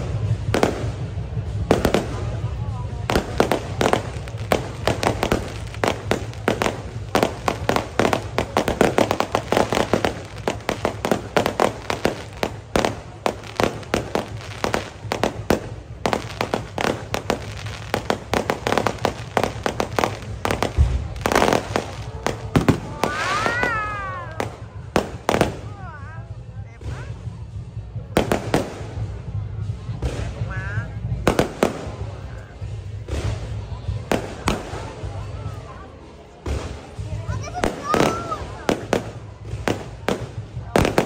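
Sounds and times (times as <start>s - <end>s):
deep fireworks boom: 0.0s - 41.0s
fireworks bangs and crackles: 0.0s - 41.0s.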